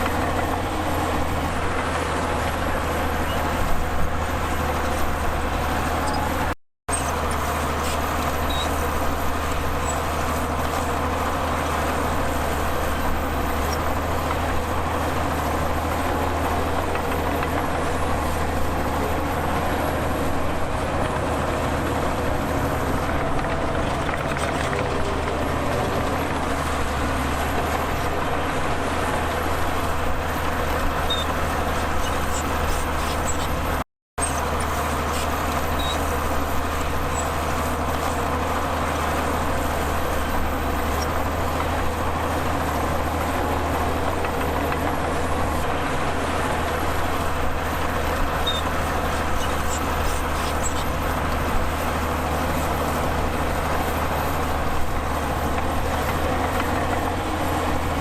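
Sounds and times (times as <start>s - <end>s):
heavy diesel machinery running: 0.0s - 58.0s.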